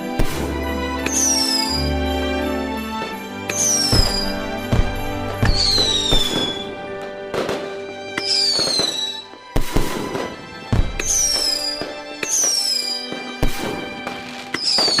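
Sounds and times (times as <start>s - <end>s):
fireworks sharp bangs: 0.0s - 1.8s, 3.0s - 15.0s
falling firework whistle: 0.2s - 2.0s, 3.5s - 6.8s, 8.2s - 10.3s, 10.9s - 15.0s.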